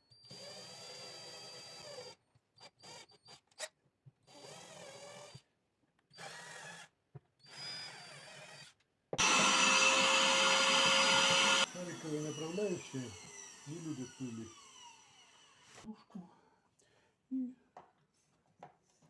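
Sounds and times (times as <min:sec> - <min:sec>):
electric drill whining: 0:00.2 - 0:02.2, 0:06.2 - 0:15.9
vacuum cleaner running: 0:09.2 - 0:15.8.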